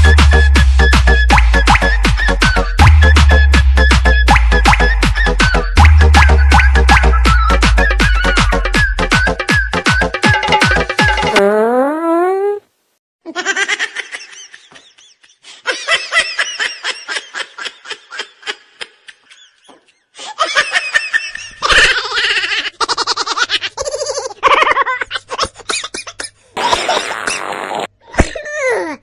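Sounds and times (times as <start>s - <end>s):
laughter in ha-ha pulses: 13.3s - 26.9s.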